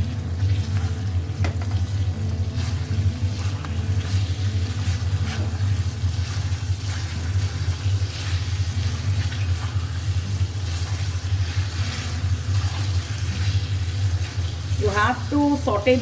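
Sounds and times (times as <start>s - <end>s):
food sizzling in a wok: 0.0s - 16.0s
steady low hum: 0.0s - 16.0s
spatula scraping: 2.5s - 14.7s.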